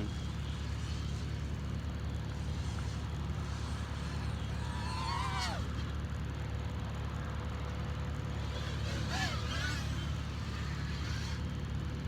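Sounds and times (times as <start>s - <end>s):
drone motors whining: 0.0s - 5.9s, 8.3s - 11.9s.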